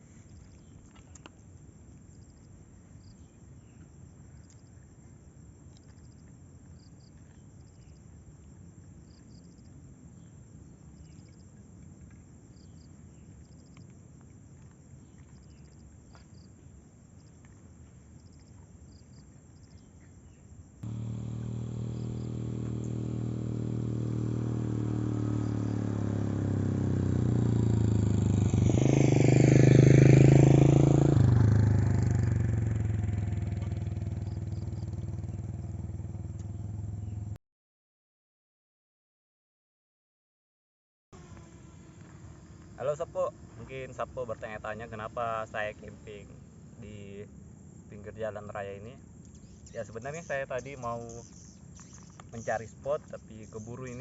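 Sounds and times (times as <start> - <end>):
insects chirping: 0.0 - 37.3, 41.2 - 54.0
vehicle engine passing: 20.8 - 37.4.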